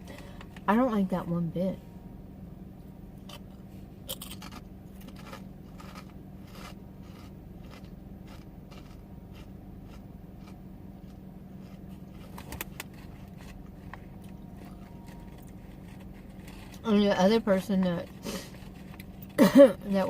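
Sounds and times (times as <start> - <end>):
steady low hum: 0.0 - 20.0
chewing crunchy chips: 3.2 - 16.8.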